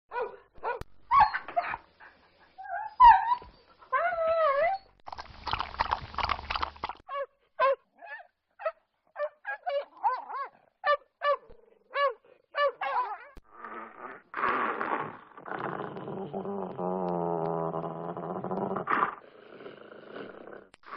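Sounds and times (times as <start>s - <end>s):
dog barking: 0.1s - 0.8s
dog whining: 2.6s - 5.0s
dog yelping: 7.1s - 13.4s.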